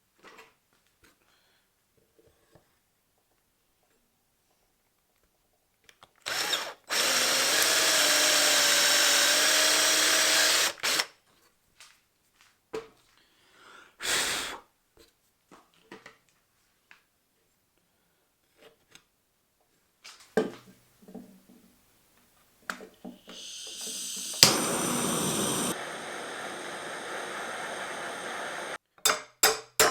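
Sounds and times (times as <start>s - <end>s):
power tool motor running: 6.3s - 11.0s, 23.3s - 28.8s.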